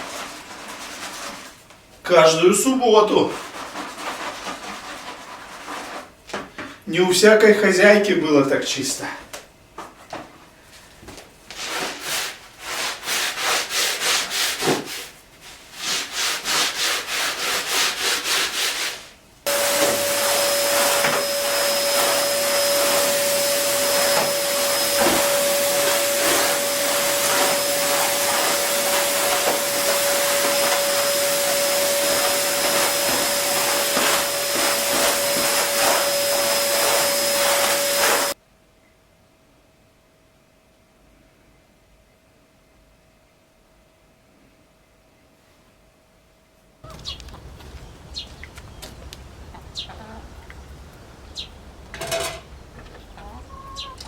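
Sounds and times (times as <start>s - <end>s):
brush scrubbing carpet: 0.0s - 1.6s, 3.2s - 6.2s, 11.5s - 38.4s
vacuum cleaner running: 19.4s - 38.4s.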